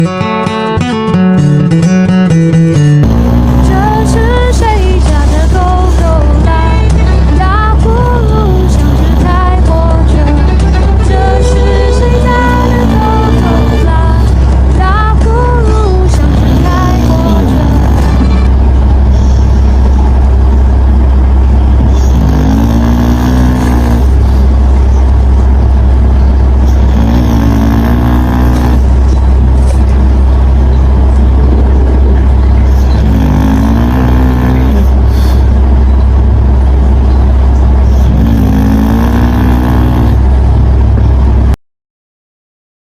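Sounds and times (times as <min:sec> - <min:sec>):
puppy snoring: 0:03.0 - 0:05.4, 0:08.4 - 0:09.7, 0:11.1 - 0:13.9, 0:16.1 - 0:18.5, 0:21.8 - 0:24.5, 0:26.7 - 0:29.0, 0:31.4 - 0:35.5, 0:37.8 - 0:40.2.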